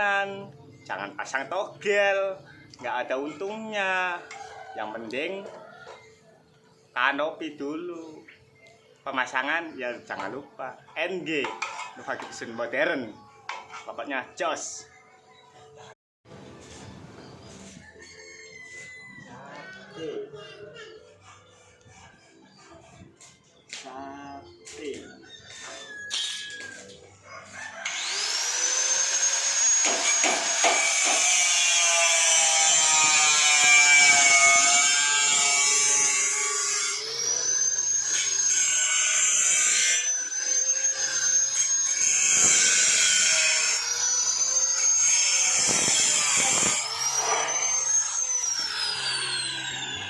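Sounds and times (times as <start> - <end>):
power tool whining: 27.5 - 50.0.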